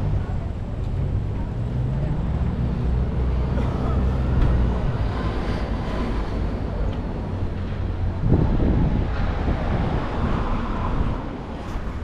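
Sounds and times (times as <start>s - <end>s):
wind buffeting microphone: 4.2s - 12.0s.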